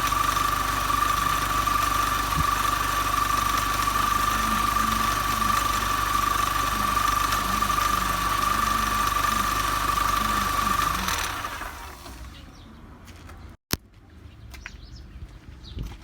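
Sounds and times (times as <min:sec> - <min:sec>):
car engine idling: 0:00.0 - 0:12.6.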